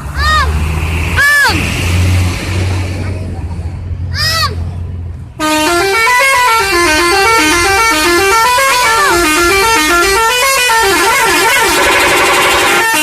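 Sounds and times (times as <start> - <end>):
multi-tone musical bus horn: 5.4 - 13.0.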